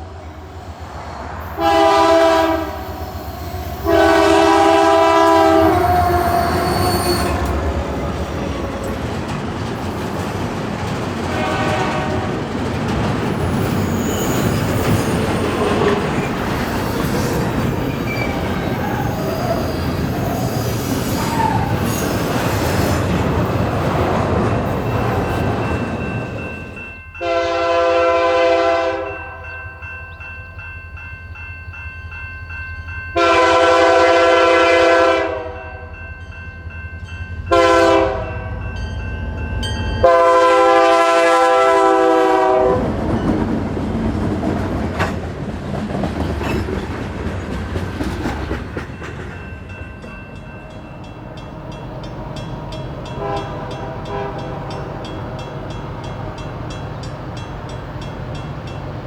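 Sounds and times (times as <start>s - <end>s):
locomotive air horn: 1.4s - 7.7s, 11.3s - 12.4s, 27.2s - 29.4s, 33.2s - 35.9s, 37.5s - 38.3s, 40.0s - 42.9s, 53.2s - 55.0s
train wheels clattering on rails: 2.9s - 27.0s, 42.4s - 59.0s.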